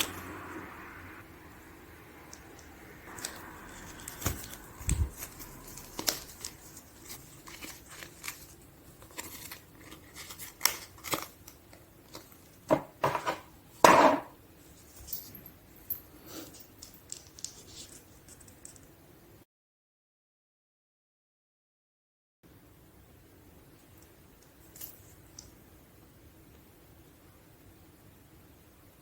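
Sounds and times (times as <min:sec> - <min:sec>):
packaging rustling: 0:02.3 - 0:12.7.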